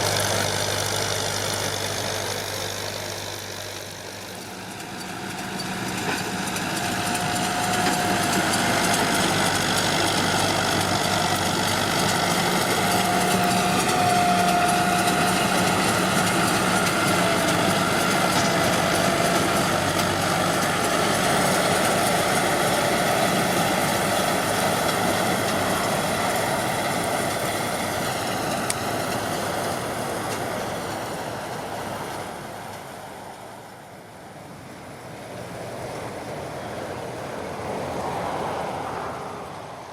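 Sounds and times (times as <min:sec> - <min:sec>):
tractor diesel engine under load: 0:00.0 - 0:39.9.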